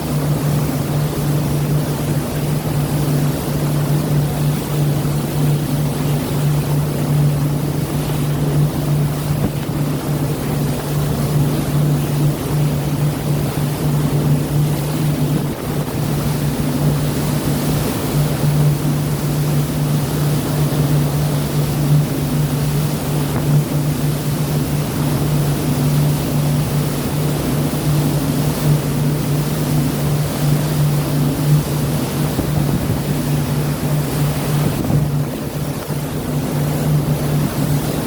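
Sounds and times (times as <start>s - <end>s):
boat engine droning: 0.0s - 38.0s
sea water rushing: 0.0s - 38.0s
wind noise: 5.9s - 19.3s, 30.5s - 38.0s.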